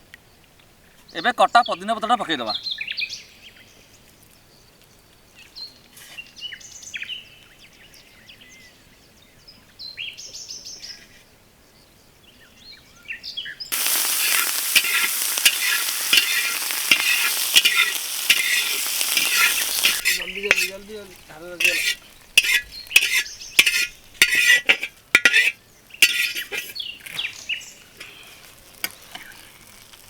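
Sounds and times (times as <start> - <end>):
birds chirping: 1.0 - 3.9, 12.4 - 24.5, 25.3 - 29.5
food sizzling in hot oil: 13.7 - 30.0
stirring scrapes in pan: 13.7 - 30.0.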